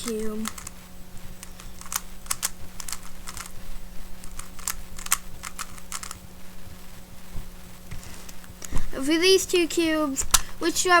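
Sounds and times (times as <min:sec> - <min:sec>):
puzzle cube plastic clicks: 0:00.0 - 0:00.8, 0:01.4 - 0:03.6, 0:04.2 - 0:06.2
steady low hum: 0:00.0 - 0:11.0.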